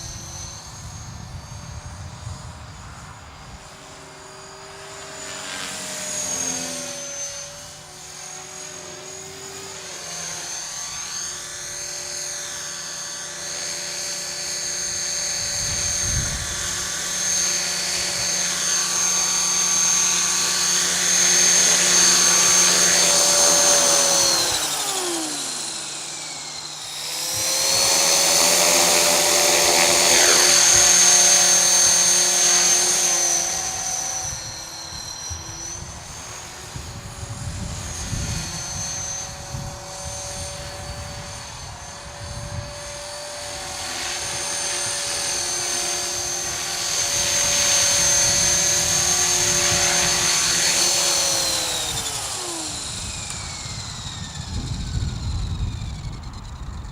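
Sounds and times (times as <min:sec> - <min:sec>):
wind rumble on microphone: 0:00.0 - 0:03.7, 0:15.3 - 0:17.0, 0:33.7 - 0:43.0, 0:51.5 - 0:56.9
model helicopter rotor whine: 0:00.0 - 0:56.9.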